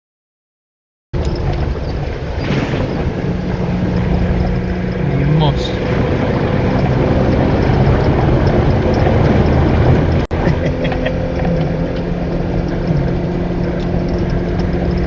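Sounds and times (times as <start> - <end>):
car engine running: 1.2 - 15.0
rushing road and water noise: 1.2 - 15.0.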